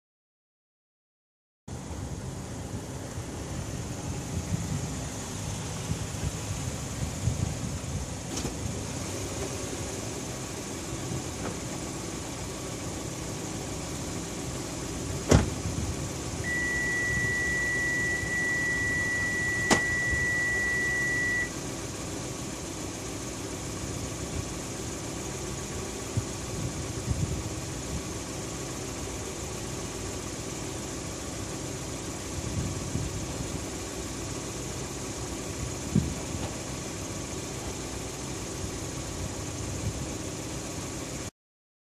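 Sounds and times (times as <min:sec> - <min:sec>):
car engine idling: 0:01.7 - 0:41.3
sharp clunk: 0:15.3 - 0:15.6, 0:19.7 - 0:19.9
steady high beep: 0:16.4 - 0:21.6.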